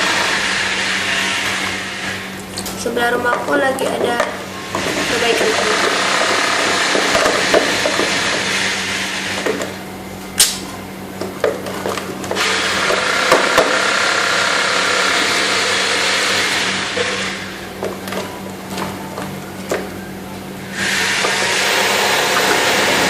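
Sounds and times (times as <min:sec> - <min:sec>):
power tool running: 0:00.0 - 0:02.4, 0:04.4 - 0:09.8, 0:12.3 - 0:17.8, 0:20.6 - 0:23.0.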